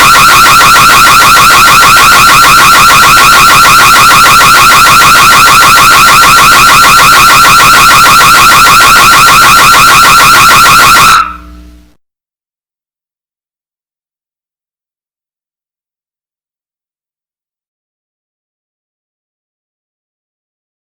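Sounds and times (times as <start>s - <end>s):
burglar alarm siren warbling: 0.0s - 11.6s.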